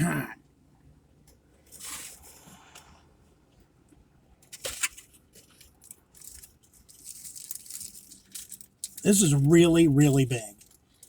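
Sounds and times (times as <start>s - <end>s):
sandwich wrapper rustling: 1.6s - 2.9s, 4.4s - 11.0s.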